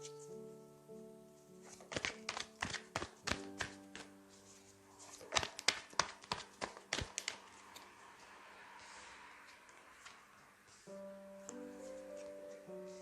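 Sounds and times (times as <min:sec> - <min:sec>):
soft piano music: 0:00.0 - 0:08.8, 0:09.5 - 0:13.0
cards shuffling: 0:01.6 - 0:07.9.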